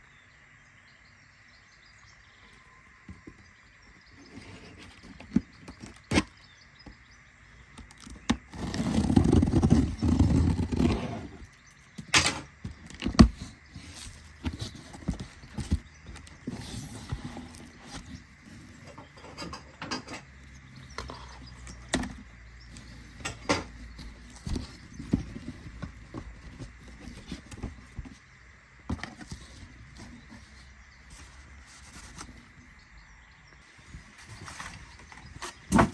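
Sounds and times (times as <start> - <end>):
packaging clicks and knocks: 7.7 - 28.2
packaging scraping rush: 7.9 - 11.6, 12.6 - 19.1, 20.4 - 28.2.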